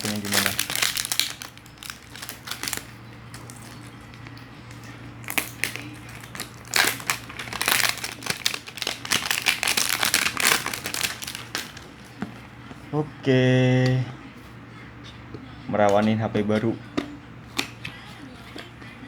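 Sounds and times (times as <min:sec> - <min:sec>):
plastic packaging crinkling: 0:00.0 - 0:12.4.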